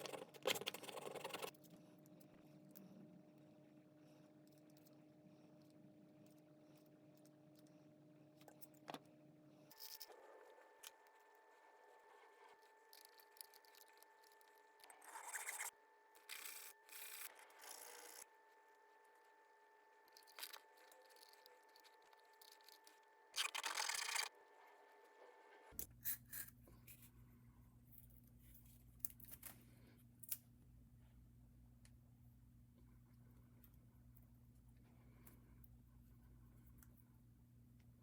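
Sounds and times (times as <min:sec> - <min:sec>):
low steady hum: 0:25.8 - 0:38.0.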